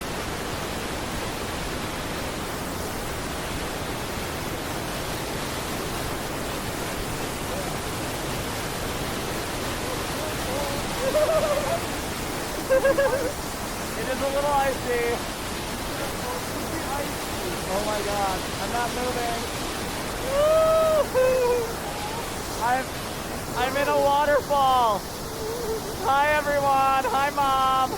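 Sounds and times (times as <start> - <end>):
waterfall rushing: 0.0 - 27.9
person hooting: 11.0 - 11.9, 20.2 - 22.3, 25.2 - 26.1.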